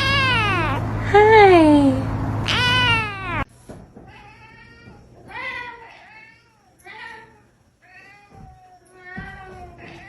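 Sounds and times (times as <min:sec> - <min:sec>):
cat meowing: 0:00.0 - 0:00.9, 0:02.4 - 0:03.5.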